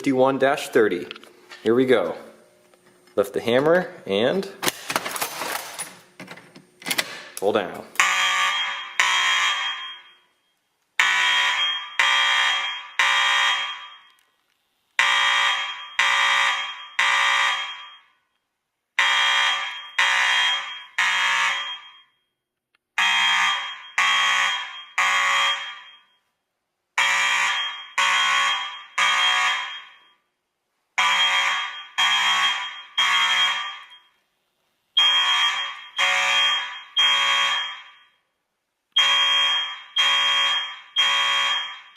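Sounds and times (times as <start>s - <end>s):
fire alarm horn buzzing: 8.0s - 10.4s, 11.0s - 14.2s, 15.0s - 18.2s, 19.0s - 22.2s, 23.0s - 26.2s, 27.0s - 30.2s, 31.0s - 34.2s, 35.0s - 38.2s, 39.0s - 41.9s.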